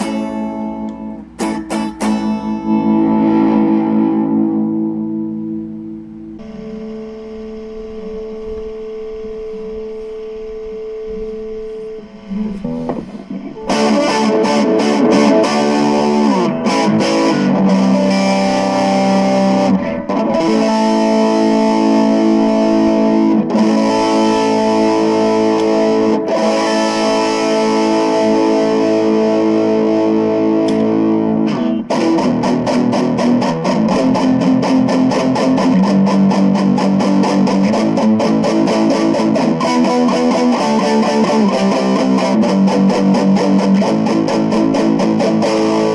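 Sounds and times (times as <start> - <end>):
distorted electric guitar: 0.0 - 45.9.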